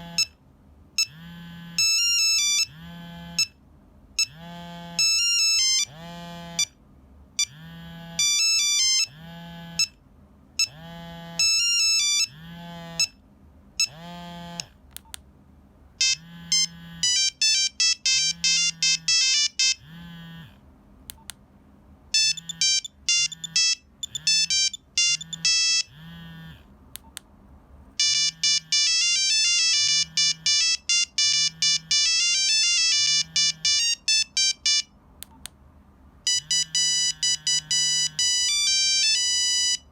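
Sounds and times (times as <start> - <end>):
low pulsing buzz: 15.9 - 21.3, 22.1 - 35.5
monophonic ringtone beeping: 16.0 - 19.8, 22.2 - 25.9, 28.0 - 34.9, 36.3 - 39.9.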